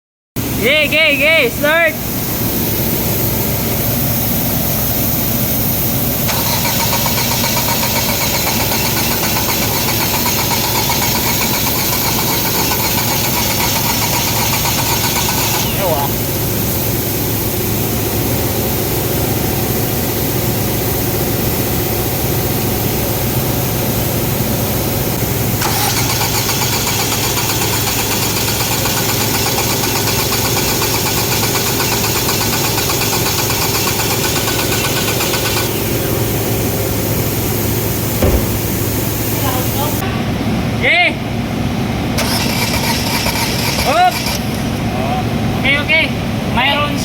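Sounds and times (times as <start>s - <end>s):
car engine idling: 6.0s - 16.6s, 23.0s - 40.0s
high hiss: 25.2s - 40.0s.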